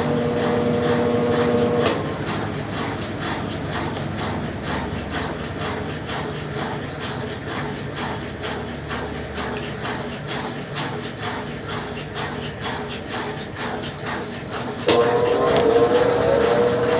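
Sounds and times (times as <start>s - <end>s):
motor humming: 0.0s - 2.4s, 14.8s - 16.9s
washing machine agitating water: 0.0s - 16.9s.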